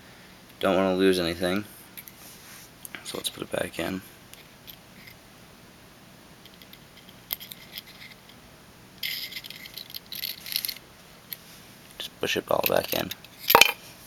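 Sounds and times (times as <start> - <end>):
small metal parts clicking: 6.4 - 8.3, 9.0 - 10.8, 12.6 - 13.8
light metallic rattling: 12.6 - 13.8.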